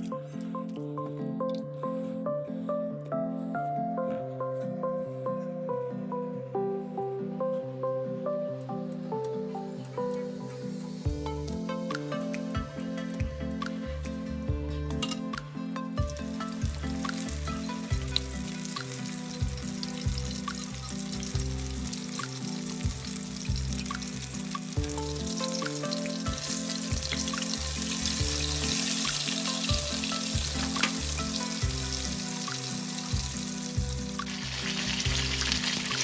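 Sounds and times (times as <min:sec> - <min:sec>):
background music with bass line: 0:10.0 - 0:36.0
chicken frying in hot oil: 0:16.3 - 0:36.0.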